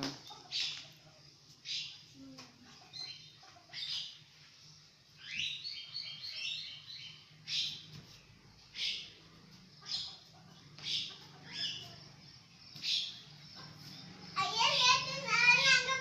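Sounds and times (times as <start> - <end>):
quail chirping: 5.2 - 14.2.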